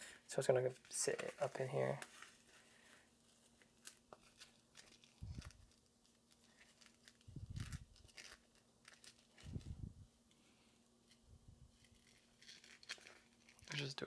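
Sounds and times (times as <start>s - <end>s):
rustling and scratching of padding: 0.0s - 9.9s.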